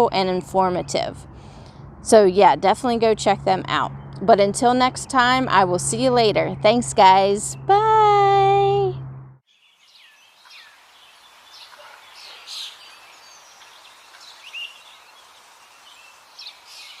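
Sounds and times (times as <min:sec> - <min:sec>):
birds chirping and calling: 0:09.6 - 0:17.0
faint steady hiss: 0:09.6 - 0:17.0.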